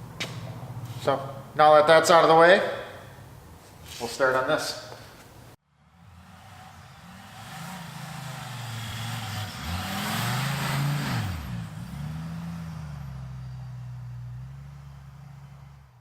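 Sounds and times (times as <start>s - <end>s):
vehicle engine revving: 5.8s - 16.0s.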